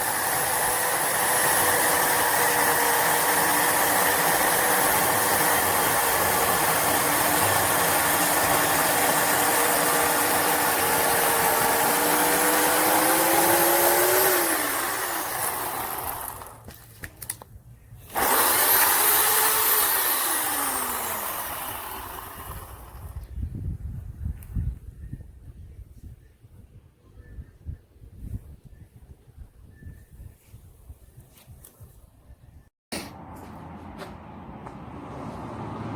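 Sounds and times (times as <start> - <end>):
electric chainsaw motor whining: 0.0 - 16.7, 18.0 - 23.3
wind buffeting microphone: 22.2 - 32.0.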